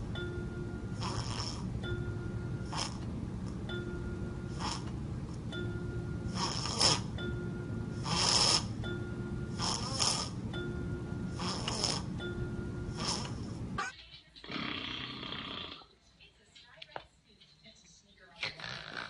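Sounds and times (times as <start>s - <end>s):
thin steady high tone: 0.0s - 1.0s, 5.5s - 11.4s, 12.0s - 13.9s
baby snoring: 1.0s - 1.7s, 2.6s - 3.0s, 4.5s - 4.9s, 6.3s - 7.2s, 7.9s - 8.8s, 9.5s - 10.4s, 11.3s - 12.2s, 12.9s - 13.6s, 14.4s - 15.9s, 18.5s - 19.0s.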